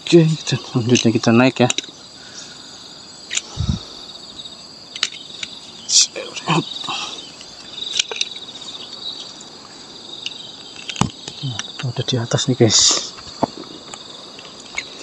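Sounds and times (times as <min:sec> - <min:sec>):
insects chirring: 0:00.0 - 0:15.0
knocks and clicks from climbing: 0:10.2 - 0:12.0.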